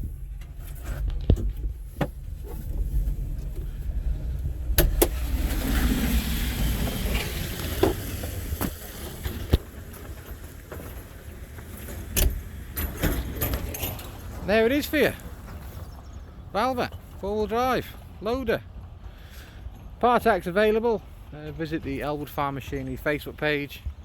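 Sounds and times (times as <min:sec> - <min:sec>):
knocks and clicks in cab: 0:00.4 - 0:05.6, 0:06.6 - 0:11.0, 0:11.9 - 0:14.2
diesel engine idling: 0:01.7 - 0:23.7.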